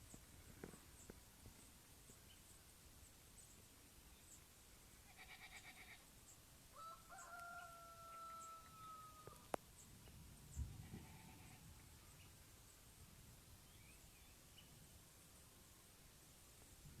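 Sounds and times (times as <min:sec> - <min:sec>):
distant rooster crowing: 0:06.7 - 0:09.6.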